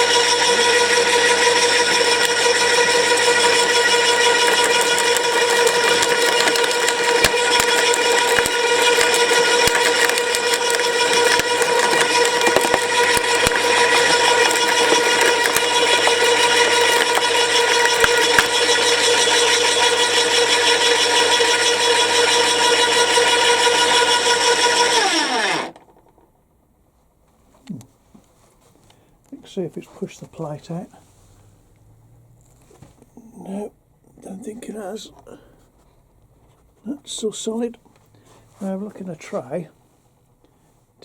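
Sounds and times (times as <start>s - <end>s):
motor winding down: 0.0s - 26.0s
garden shredder whining: 0.0s - 26.1s.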